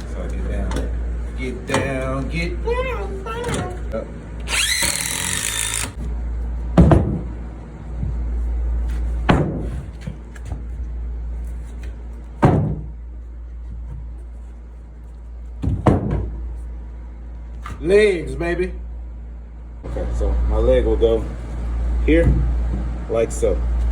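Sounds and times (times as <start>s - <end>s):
steady low hum: 0.0s - 23.9s
cordless drill whining: 4.4s - 6.0s.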